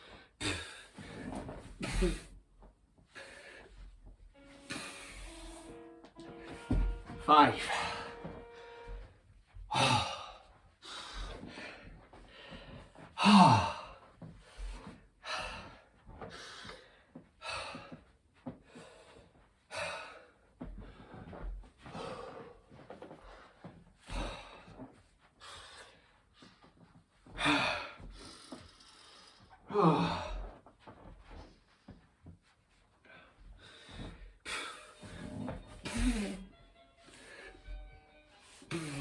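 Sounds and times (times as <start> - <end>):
man breathing hard and gasping: 9.7 - 18.0, 21.8 - 22.7, 27.3 - 30.5.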